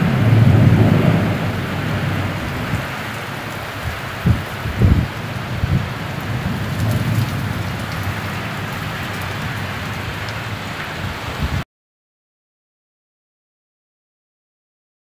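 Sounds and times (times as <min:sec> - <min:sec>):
heavy rain pouring: 0:00.0 - 0:11.6
low thunder rumbles: 0:00.0 - 0:11.6.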